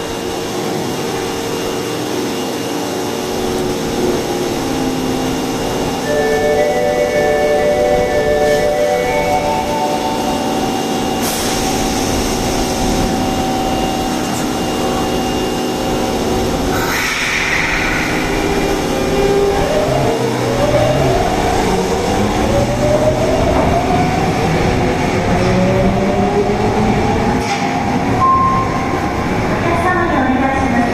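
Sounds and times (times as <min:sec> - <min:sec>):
subway train running: 0:00.0 - 0:30.9
traction motor whine rising: 0:03.9 - 0:27.4
rush of noise: 0:09.6 - 0:29.8.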